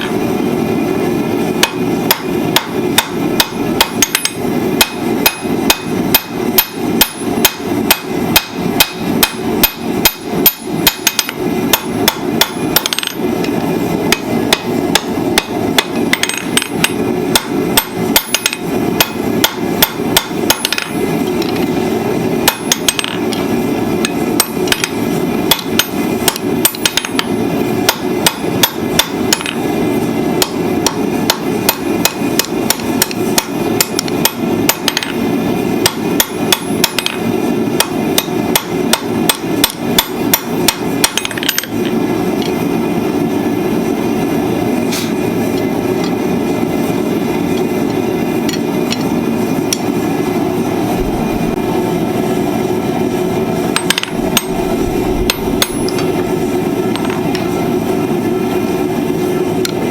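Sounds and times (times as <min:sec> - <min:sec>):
hammer striking steel on anvil: 0:01.6 - 0:21.8, 0:22.4 - 0:29.7, 0:30.4 - 0:42.6, 0:53.7 - 0:57.6
low rushing noise: 0:50.3 - 0:58.1.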